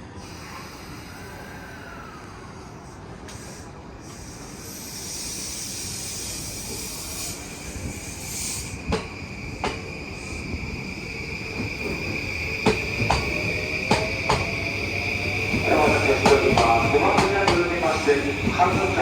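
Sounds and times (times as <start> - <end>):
electric train running noise: 0.0 - 19.0
high train whine: 0.0 - 19.0
wheels clacking over rail joints: 15.5 - 19.0.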